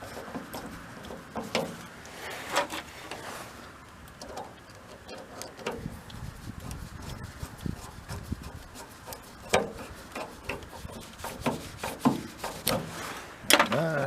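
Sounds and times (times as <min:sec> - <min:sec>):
low rubbing sound: 0:00.0 - 0:03.8, 0:05.8 - 0:13.4
hand tools clicking and tapping: 0:08.8 - 0:12.9, 0:13.5 - 0:14.0.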